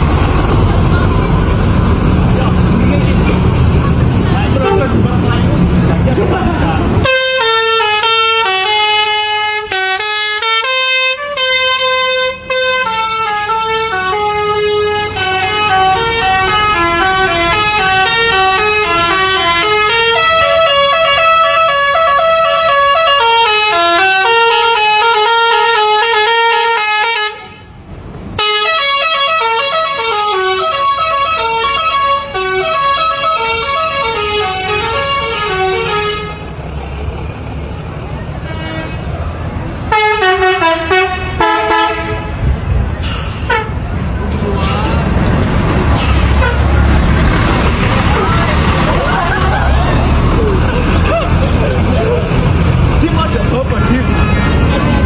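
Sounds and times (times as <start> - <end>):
musical bus air horn melody: 7.0 - 27.8, 28.4 - 36.6, 38.4 - 39.1, 39.9 - 42.4, 43.0 - 43.8, 46.0 - 46.8.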